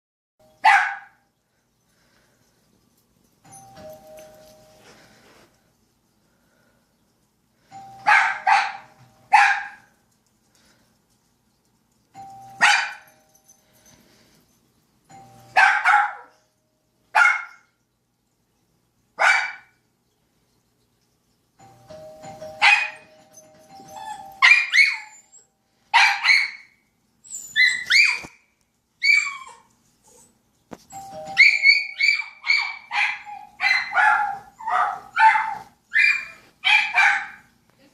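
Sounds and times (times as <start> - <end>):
dog barking: 0.6 - 1.2, 8.1 - 9.9, 12.6 - 13.1, 15.6 - 16.4, 17.2 - 17.7, 19.2 - 19.7, 22.6 - 23.0, 26.0 - 26.7, 31.6 - 37.5
two-note doorbell chime: 3.4 - 5.2, 7.7 - 9.3, 12.2 - 13.8, 15.1 - 15.8, 21.6 - 25.3, 30.9 - 32.4.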